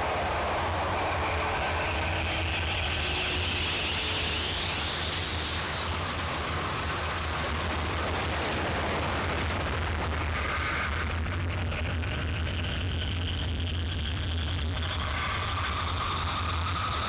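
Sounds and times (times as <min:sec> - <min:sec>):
distorted noise music: 0:00.0 - 0:17.0.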